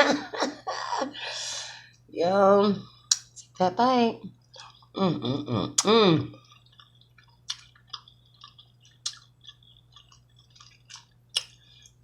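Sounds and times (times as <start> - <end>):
person chewing wetly: 4.4 - 5.0, 5.8 - 12.0.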